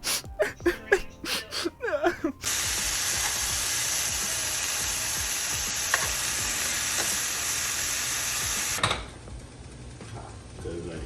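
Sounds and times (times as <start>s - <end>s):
food sizzling in a frying pan: 2.4s - 8.8s.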